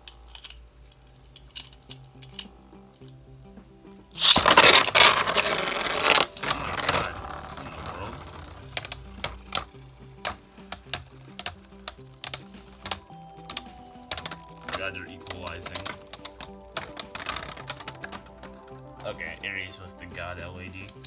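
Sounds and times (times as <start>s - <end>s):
spinning tops clicking: 0.0s - 21.0s
spinning tops grinding rattle: 4.1s - 19.5s.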